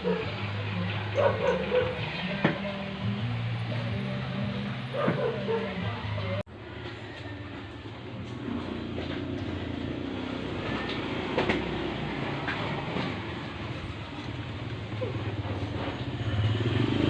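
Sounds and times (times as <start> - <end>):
engine running with a knock: 1.2 - 3.2, 4.9 - 5.6, 6.8 - 17.0.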